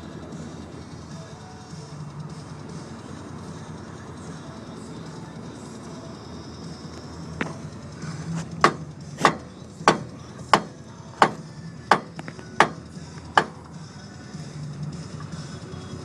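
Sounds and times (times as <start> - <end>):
hammer striking: 7.4 - 7.7, 8.4 - 13.7.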